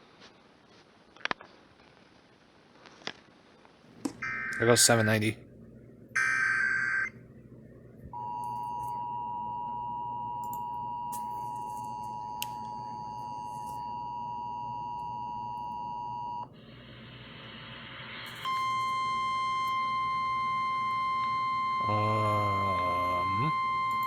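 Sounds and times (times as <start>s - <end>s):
radio hiss: 16.6s - 18.5s.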